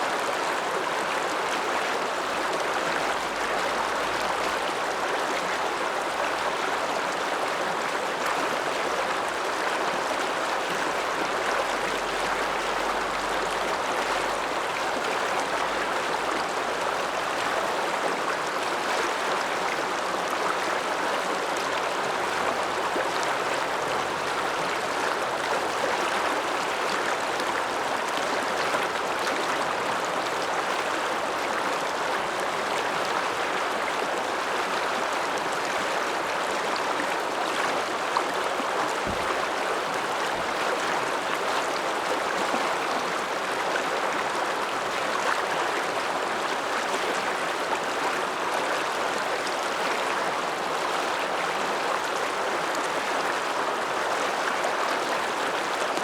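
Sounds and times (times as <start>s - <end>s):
mountain river rushing: 0.0s - 56.0s.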